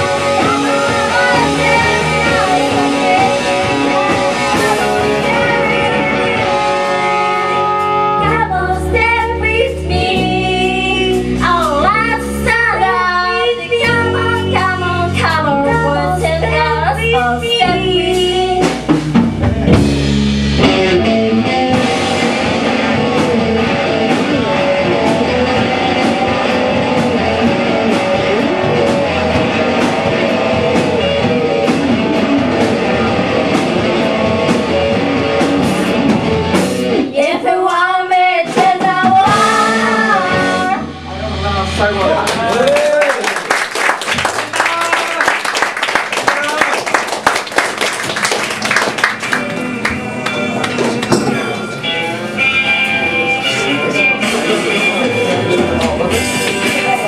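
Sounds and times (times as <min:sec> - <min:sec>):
person singing: 0:00.0 - 0:18.8, 0:37.0 - 0:41.4
rock band playing: 0:00.0 - 0:57.0.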